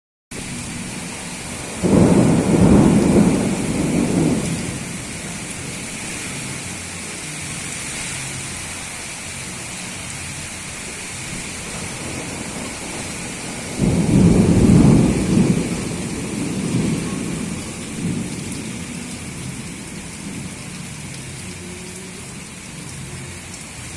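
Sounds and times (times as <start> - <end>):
storm wind and rain: 0.3 - 23.9
loud low rumbles: 11.8 - 21.4.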